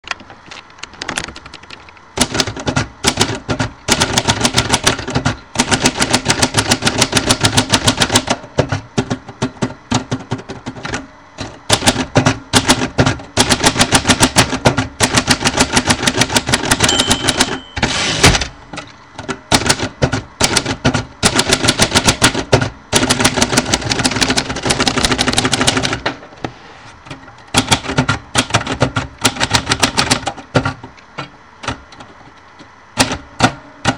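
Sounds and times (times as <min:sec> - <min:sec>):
typewriter keys clacking: 0:11.7 - 0:18.4, 0:19.5 - 0:26.0
brief ringing tone: 0:16.8 - 0:18.0.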